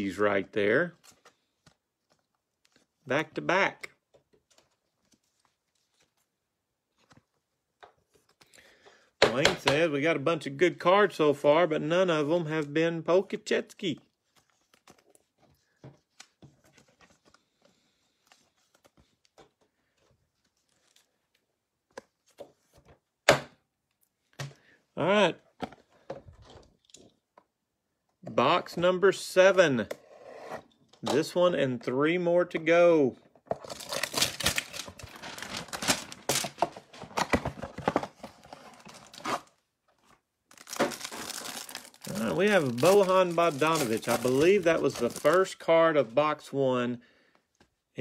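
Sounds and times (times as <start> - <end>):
trading cards clicking and rustling: 40.5 - 45.6.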